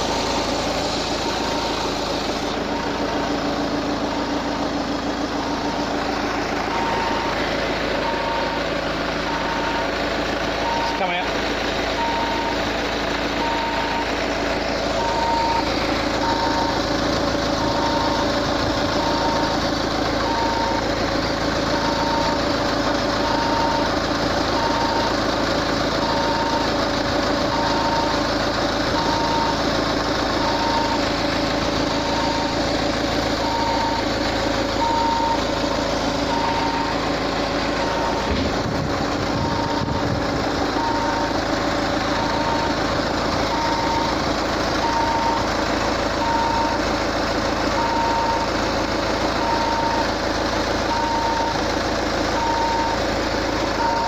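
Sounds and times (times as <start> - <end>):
high beeping: 0.0 - 4.6, 5.5 - 10.0, 12.0 - 12.7, 13.4 - 21.0, 30.4 - 32.7, 33.4 - 44.2
car engine idling: 0.0 - 54.0.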